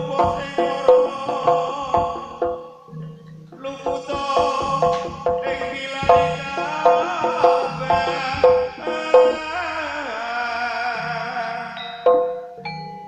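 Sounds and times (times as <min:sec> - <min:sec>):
hand drum strokes: 0:00.0 - 0:02.6, 0:03.5 - 0:09.5
struck metal keyed instruments: 0:00.0 - 0:09.5, 0:11.9 - 0:13.0
sliding wavering melody: 0:00.0 - 0:10.1, 0:10.8 - 0:13.0.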